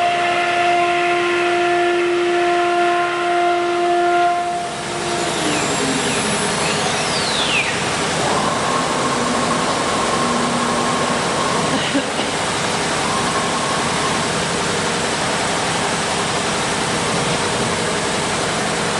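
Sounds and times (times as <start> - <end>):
router spindle high whine: 4.2 - 12.0
steady tone: 4.4 - 15.0
falling whistles: 5.0 - 7.9.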